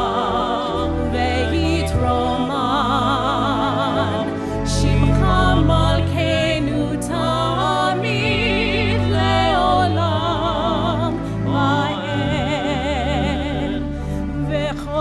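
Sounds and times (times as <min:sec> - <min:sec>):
person singing with vibrato: 0:00.0 - 0:15.0
sustained low accompaniment: 0:00.0 - 0:15.0.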